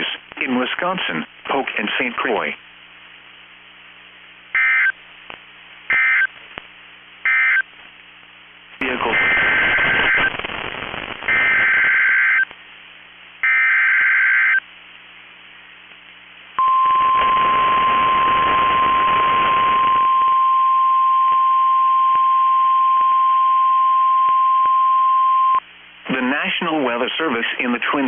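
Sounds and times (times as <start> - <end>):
static hiss: 0.0 - 20.1
steady warning alarm tone: 4.6 - 4.9, 7.3 - 7.6, 16.6 - 25.6
two-tone data bursts: 4.6 - 5.0, 5.9 - 6.3, 7.3 - 7.7, 8.8 - 12.5, 16.6 - 25.6.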